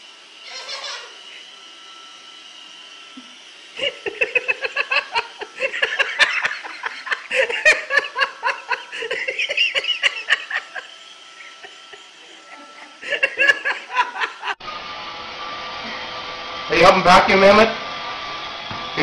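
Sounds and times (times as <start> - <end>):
high-pitched giggling laughter: 3.8 - 14.6.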